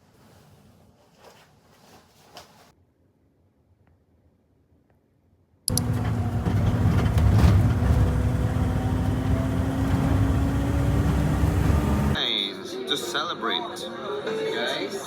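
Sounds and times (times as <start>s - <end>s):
vehicle rumble in motion: 5.7s - 12.2s.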